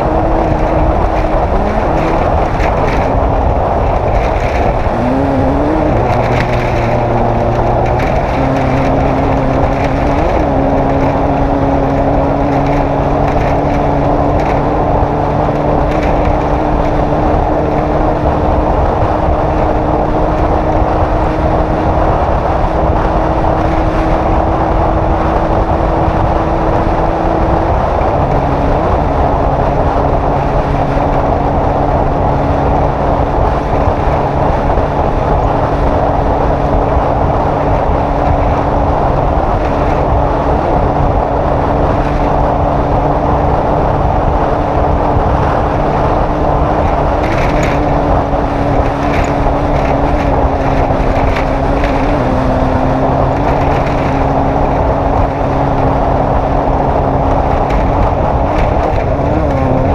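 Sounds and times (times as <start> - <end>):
rushing wind and road noise: 0.0 - 59.9
vehicle engine running: 0.0 - 59.9
short ticks and rattles: 0.1 - 17.8, 46.7 - 55.6.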